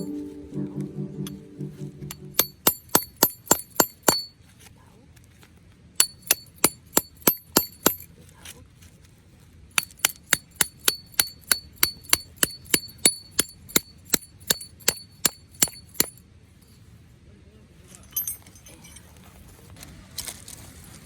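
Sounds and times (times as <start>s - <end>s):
hammer striking metal stake: 2.0s - 4.3s, 6.0s - 8.1s, 9.8s - 16.2s.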